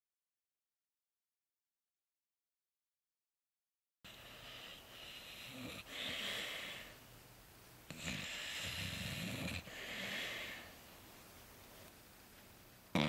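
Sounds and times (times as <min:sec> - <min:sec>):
dog snoring: 0:04.1 - 0:06.9, 0:07.9 - 0:10.7.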